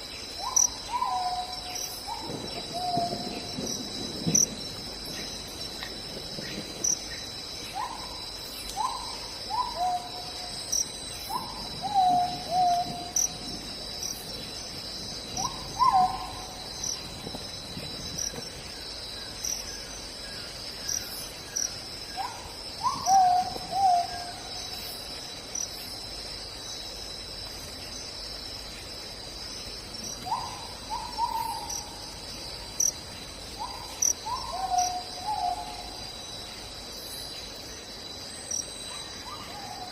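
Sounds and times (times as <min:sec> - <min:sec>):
insects trilling: 0:00.0 - 0:39.9
bird hooting calls: 0:15.4 - 0:16.6, 0:22.2 - 0:24.4, 0:30.2 - 0:32.0, 0:33.6 - 0:36.0.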